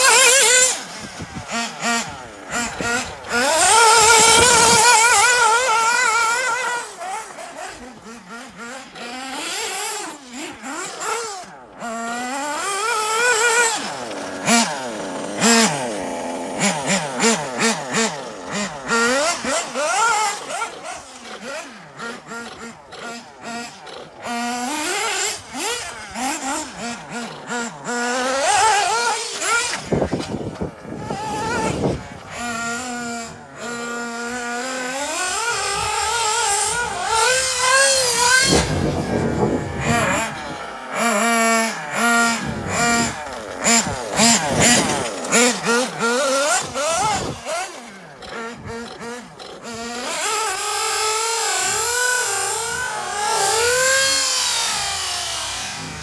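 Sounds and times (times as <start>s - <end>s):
small model engine revving: 0.0s - 56.0s.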